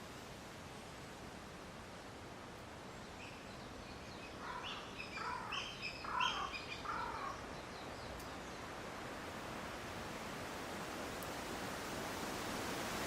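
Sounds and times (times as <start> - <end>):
wind rustling through trees: 0.0 - 13.0
bird calling: 4.2 - 7.4.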